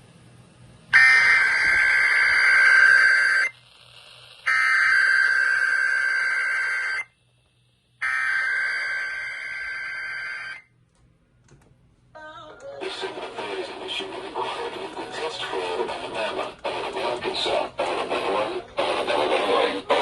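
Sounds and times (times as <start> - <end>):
warbling two-tone data screech: 1.0 - 3.5, 4.5 - 7.0.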